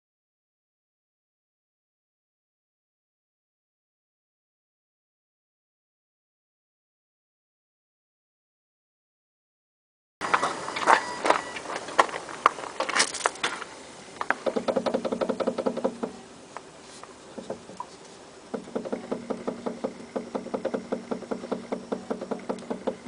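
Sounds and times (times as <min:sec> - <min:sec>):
steady hum: 0:10.2 - 0:23.0
rapid light knocking from wheel: 0:14.2 - 0:16.2, 0:17.3 - 0:17.9, 0:18.5 - 0:23.0.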